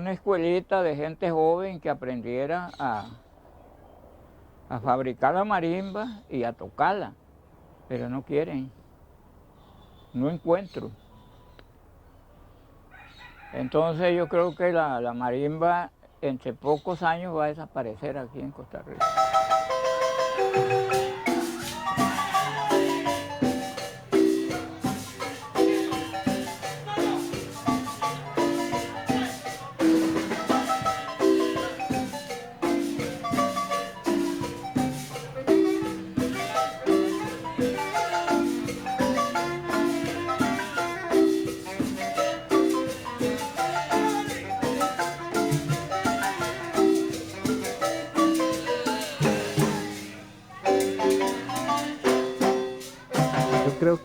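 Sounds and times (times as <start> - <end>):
marimba playing rhythmic tune: 19.0 - 54.0.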